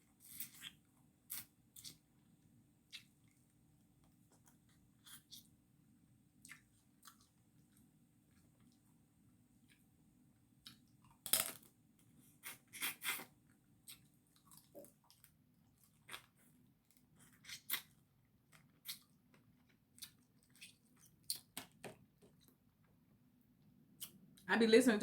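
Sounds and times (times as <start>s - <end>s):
wet chewing: 12.4s - 21.5s.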